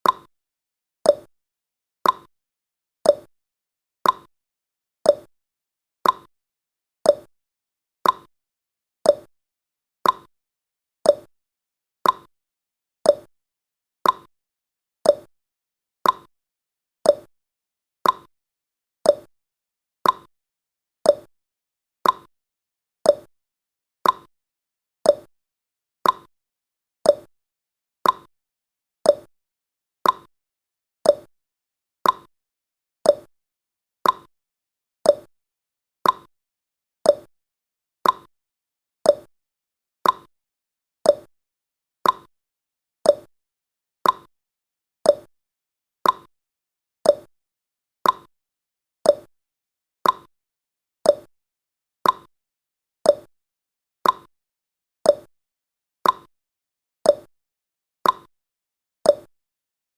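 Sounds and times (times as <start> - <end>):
timer ticking: 0.0 - 0.3, 1.1 - 1.3, 2.0 - 2.3, 3.1 - 3.3, 4.0 - 4.3, 5.1 - 5.3, 6.0 - 6.3, 7.1 - 7.3, 8.0 - 8.3, 9.1 - 9.3, 10.0 - 10.3, 11.1 - 11.3, 12.0 - 12.3, 13.1 - 13.3, 14.0 - 14.3, 15.1 - 15.3, 16.0 - 16.3, 17.1 - 17.3, 18.0 - 18.3, 19.1 - 19.3, 20.0 - 20.3, 21.1 - 21.3, 22.0 - 22.3, 23.1 - 23.3, 24.0 - 24.3, 25.1 - 25.3, 26.0 - 26.3, 27.1 - 27.3, 28.0 - 28.3, 29.1 - 29.3, 30.0 - 30.3, 31.0 - 31.3, 32.0 - 32.3, 33.1 - 33.3, 34.0 - 34.3, 35.1 - 35.3, 36.0 - 36.3, 37.1 - 37.3, 38.0 - 38.3, 39.1 - 39.3, 40.0 - 40.3, 41.1 - 41.3, 42.0 - 42.3, 43.1 - 43.3, 44.0 - 44.3, 45.1 - 45.3, 46.0 - 46.3, 47.0 - 47.3, 48.0 - 48.3, 49.1 - 49.3, 50.0 - 50.3, 51.1 - 51.3, 52.0 - 52.3, 53.1 - 53.3, 54.0 - 54.3, 55.1 - 55.3, 56.0 - 56.3, 57.1 - 57.3, 58.0 - 58.3, 59.1 - 59.3.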